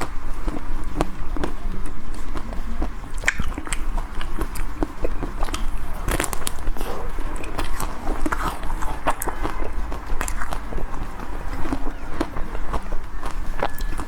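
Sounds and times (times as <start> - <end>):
chewing ice cream bar: 0.0 - 14.0
steady low hum: 0.0 - 14.0
chocolate shell crackling: 3.4 - 11.0.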